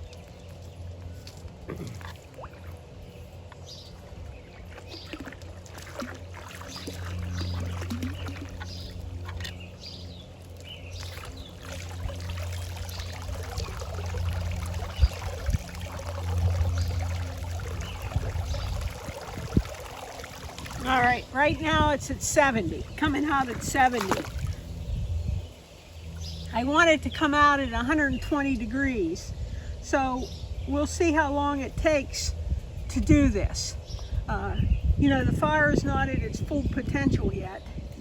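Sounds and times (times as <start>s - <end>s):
steady low hum: 0.0s - 38.0s
water pouring into pool: 1.2s - 3.0s, 4.6s - 9.6s, 10.9s - 21.4s, 22.8s - 24.8s.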